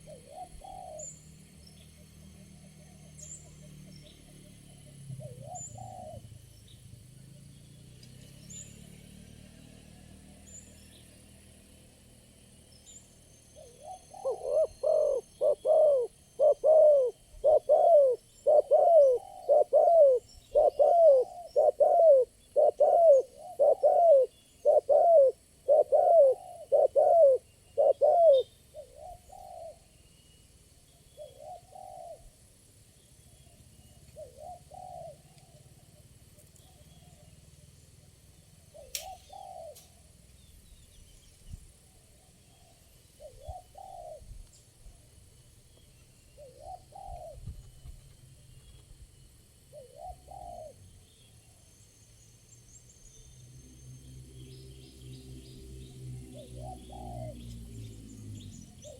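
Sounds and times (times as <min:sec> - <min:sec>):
dove cooing: 0:00.0 - 0:01.1, 0:02.6 - 0:06.3, 0:13.6 - 0:29.8, 0:31.2 - 0:32.4, 0:34.0 - 0:37.7, 0:38.6 - 0:40.0, 0:42.0 - 0:45.2, 0:46.4 - 0:47.6, 0:49.7 - 0:50.8, 0:56.2 - 0:57.6.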